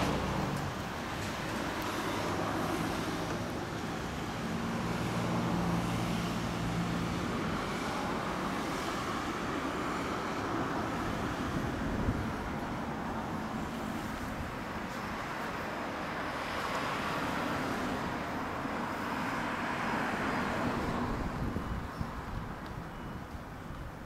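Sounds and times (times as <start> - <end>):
street traffic: 0.0 - 24.0.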